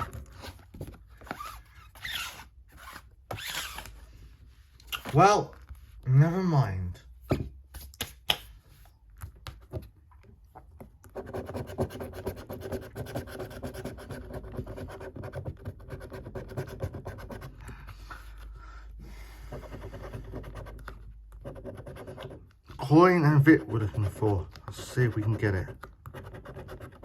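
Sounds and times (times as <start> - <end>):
scratchcard coating being scraped: 11.1 - 17.6, 19.3 - 27.0.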